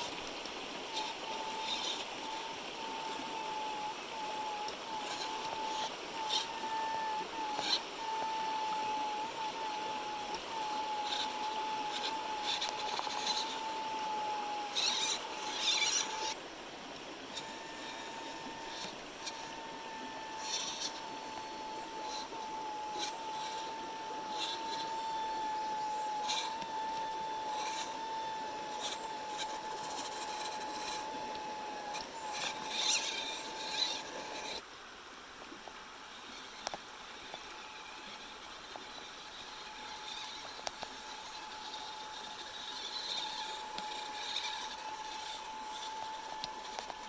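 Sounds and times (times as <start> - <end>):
small electric motor whining: 0.0 - 34.6, 36.2 - 47.0.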